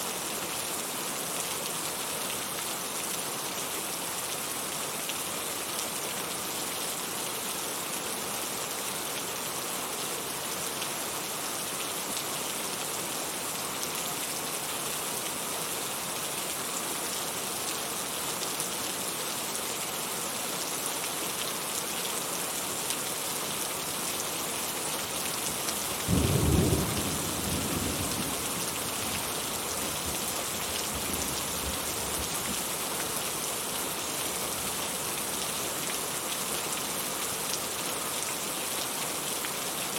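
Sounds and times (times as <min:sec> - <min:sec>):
heavy rain hissing: 0:24.4 - 0:32.5.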